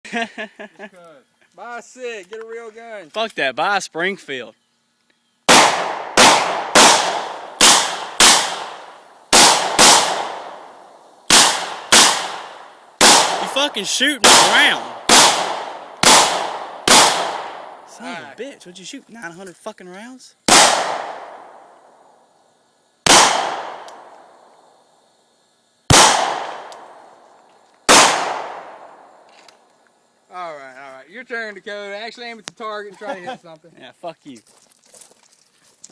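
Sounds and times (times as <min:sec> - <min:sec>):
pistol shots echoing: 0:05.5 - 0:17.9, 0:20.5 - 0:21.7, 0:23.1 - 0:24.4, 0:25.9 - 0:27.1, 0:27.9 - 0:29.0.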